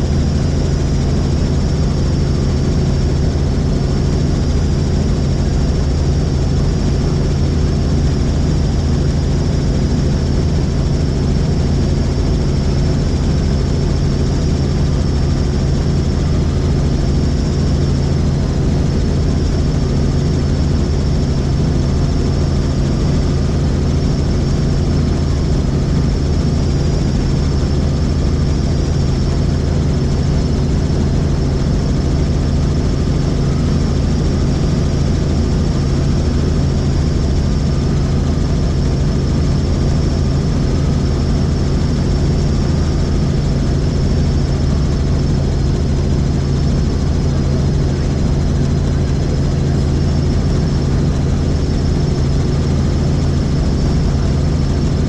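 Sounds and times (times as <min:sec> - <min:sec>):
helicopter rotor and engine drone: 0:00.0 - 0:55.0.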